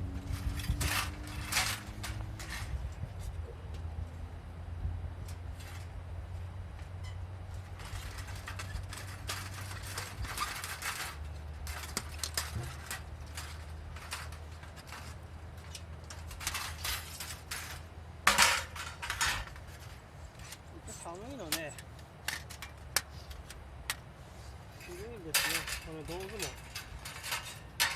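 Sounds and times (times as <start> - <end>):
steady low rumble: 0.0 - 20.9
charcoal scraping and metal clinking: 0.2 - 3.0, 7.6 - 27.9.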